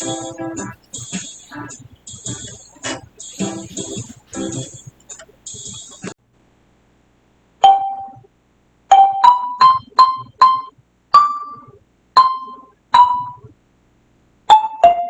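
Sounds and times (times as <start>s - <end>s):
slow keyboard melody: 0.0s - 6.1s.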